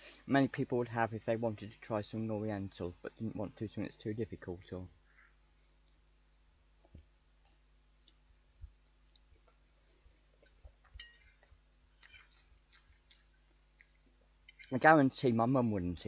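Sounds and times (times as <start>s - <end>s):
chewing: 8.0s - 8.3s, 10.1s - 14.7s.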